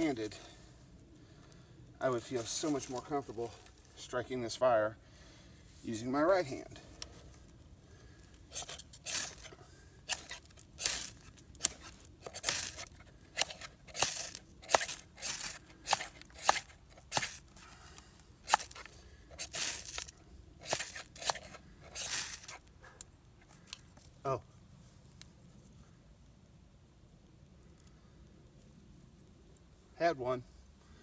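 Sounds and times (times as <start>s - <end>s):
knife scraping ferro rod: 8.5s - 17.5s, 18.4s - 22.6s.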